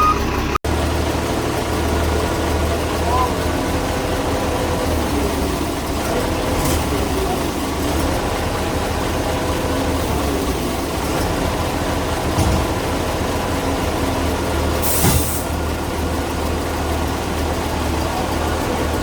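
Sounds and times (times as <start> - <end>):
heavy engine running: 0.0 - 19.0
thump: 15.0 - 15.3.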